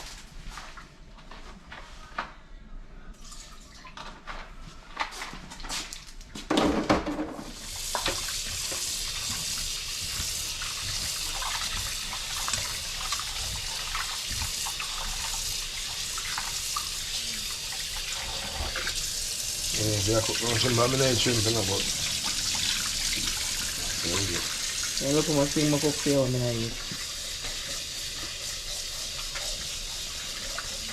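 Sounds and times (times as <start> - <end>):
tap running into sink: 6.5 - 15.4.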